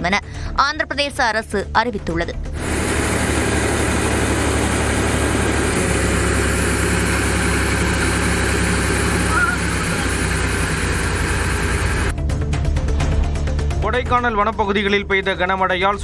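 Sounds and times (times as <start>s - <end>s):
vehicle engine idling: 2.6s - 12.1s.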